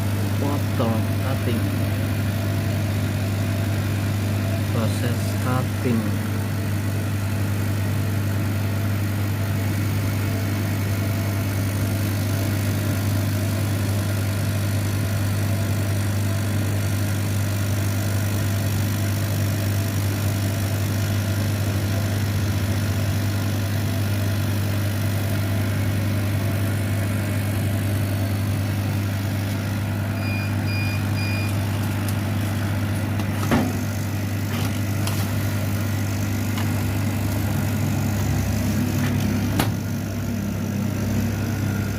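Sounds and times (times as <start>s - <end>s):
laser cutter machine hum: 0.0s - 41.9s
short electronic beeps: 30.1s - 31.6s.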